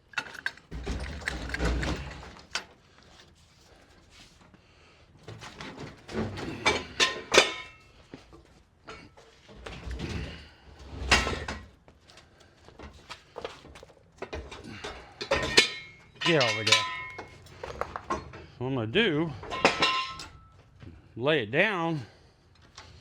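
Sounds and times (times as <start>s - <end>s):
metal clanks and scrapes: 0.0s - 3.4s, 5.3s - 8.0s, 8.8s - 11.8s, 12.8s - 18.6s, 19.3s - 20.7s.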